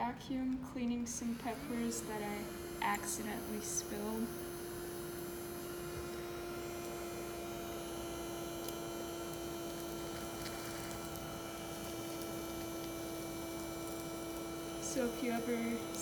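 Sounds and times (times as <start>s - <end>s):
small electric motor humming: 1.1s - 16.0s.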